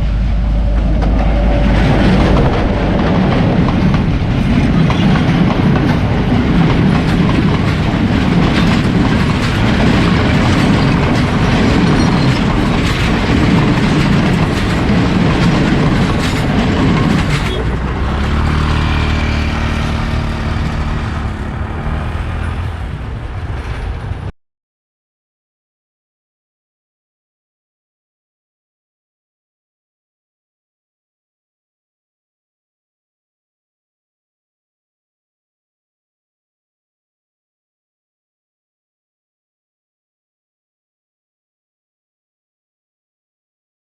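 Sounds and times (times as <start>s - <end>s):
train wheels clattering on rails: 0.6s - 24.3s
steady engine hum: 13.9s - 24.3s.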